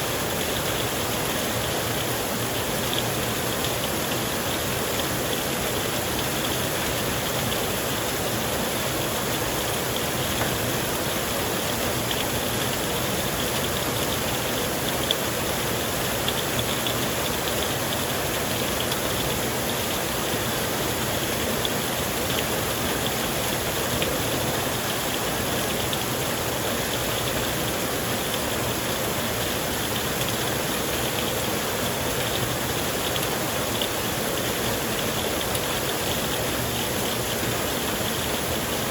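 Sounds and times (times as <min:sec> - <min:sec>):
heavy rain downpour: 0:00.0 - 0:38.9
rain drop ticks: 0:11.7 - 0:23.2, 0:29.8 - 0:31.4, 0:32.2 - 0:36.1.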